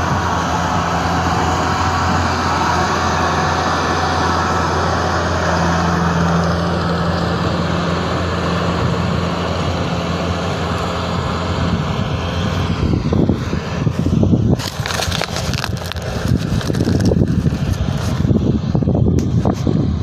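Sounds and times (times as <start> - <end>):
harvester engine humming: 0.0 - 20.0.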